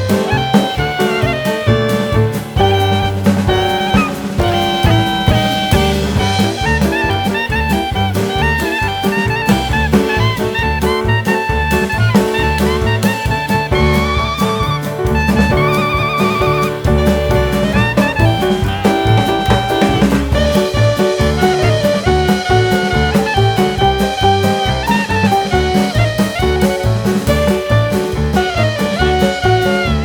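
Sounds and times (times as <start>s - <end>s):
upbeat swing music with horns: 0.0s - 30.0s.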